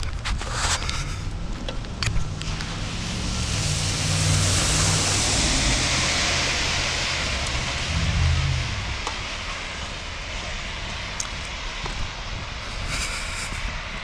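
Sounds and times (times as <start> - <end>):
low engine hum: 1.5 - 10.4
tyre hiss on wet pavement: 2.3 - 14.0.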